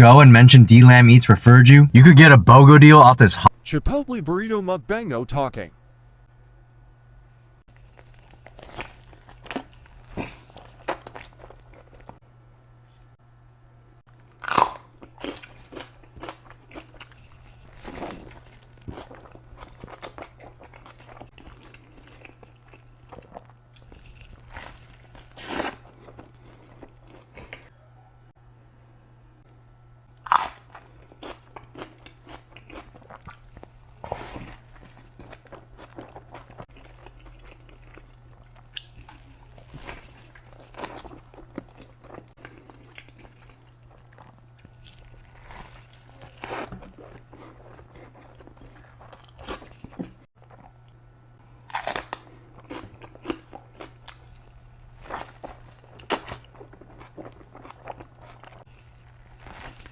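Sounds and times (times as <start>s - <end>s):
person eating with crunches: 7.7s - 12.2s, 14.1s - 27.7s, 30.1s - 59.9s.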